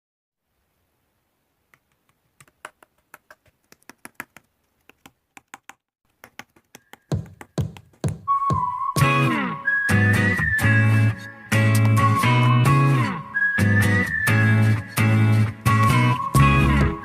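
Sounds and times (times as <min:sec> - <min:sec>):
pop music with bass beat: 0:10.2 - 0:12.9, 0:14.7 - 0:17.0.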